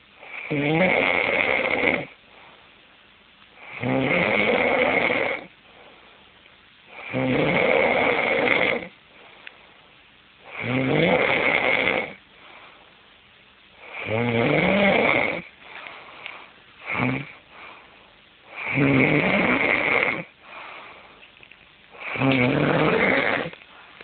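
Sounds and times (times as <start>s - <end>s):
man snoring loudly: 0.2s - 2.2s, 3.6s - 5.5s, 7.0s - 8.9s, 10.5s - 12.2s, 13.8s - 15.5s, 16.8s - 17.4s, 18.5s - 20.3s, 22.0s - 23.6s.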